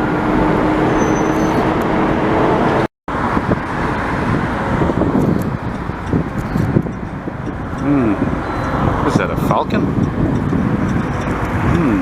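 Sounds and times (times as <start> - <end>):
jet engines rumbling: 0.0 - 11.8.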